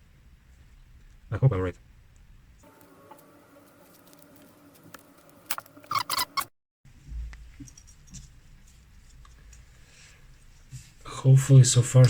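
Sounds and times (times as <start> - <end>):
faint steady hum: 0.0 - 5.9.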